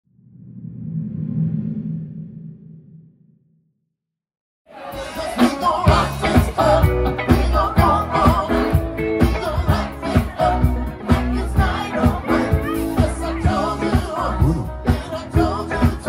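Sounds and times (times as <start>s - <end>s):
music with heavy bass beat: 4.9s - 16.0s.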